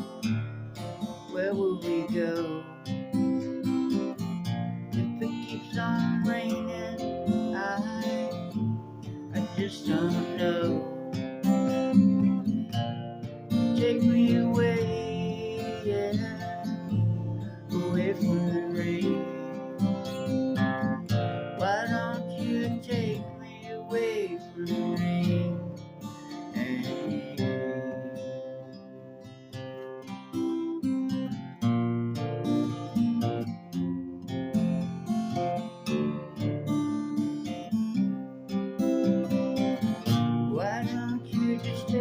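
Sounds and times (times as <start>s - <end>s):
acoustic guitar strummed chords: 0.0s - 42.0s
guitar melody line: 0.0s - 42.0s.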